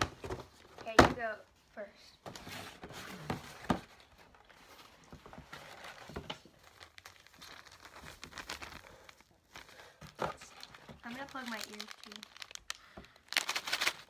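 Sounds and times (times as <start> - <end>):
packaging crinkling and rustling: 2.3 - 14.0.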